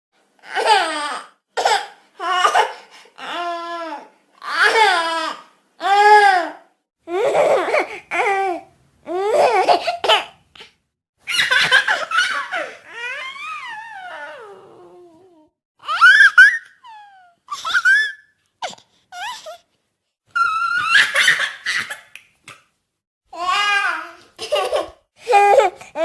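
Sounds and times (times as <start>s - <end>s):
baby laughing and cooing: 7.1s - 10.7s, 11.3s - 14.4s, 15.8s - 19.6s, 20.4s - 22.1s, 23.4s - 26.0s.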